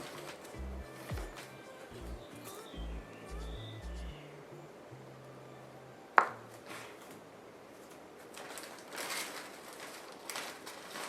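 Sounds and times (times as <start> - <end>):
faint rustling handling noises: 0.0 - 2.6, 6.3 - 11.0.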